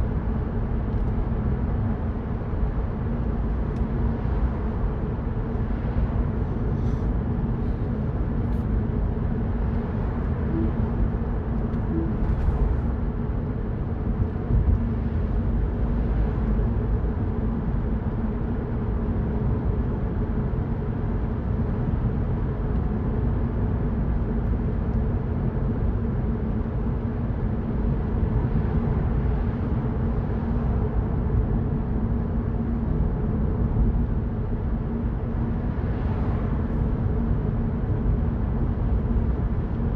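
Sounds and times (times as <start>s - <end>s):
car engine hum: 0.1s - 18.2s.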